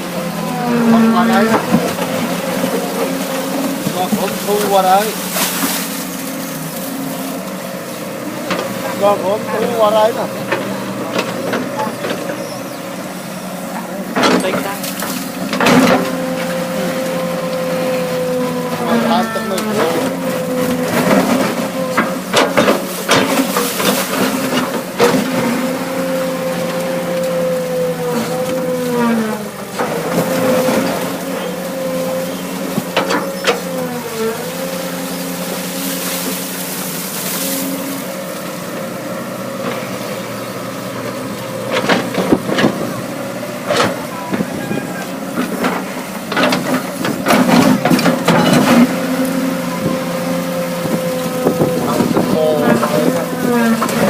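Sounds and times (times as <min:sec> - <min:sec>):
excavator diesel engine running: 0:00.0 - 0:54.0
knocks and clanks: 0:14.1 - 0:16.6, 0:19.5 - 0:25.7, 0:43.6 - 0:50.0.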